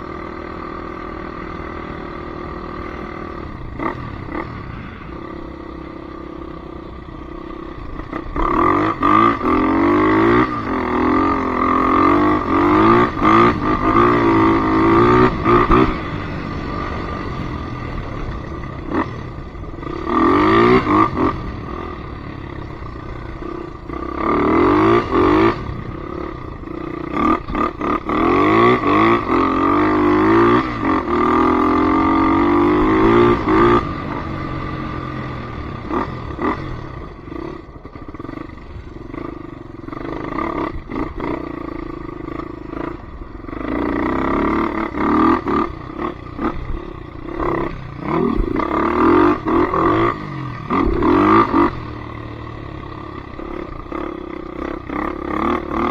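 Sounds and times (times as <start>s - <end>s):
atv engine revving: 0.0s - 55.9s.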